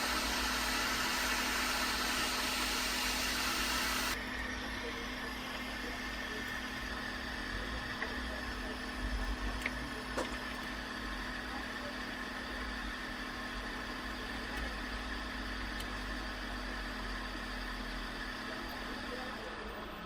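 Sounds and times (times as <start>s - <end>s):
heat gun blowing air: 0.0s - 4.2s.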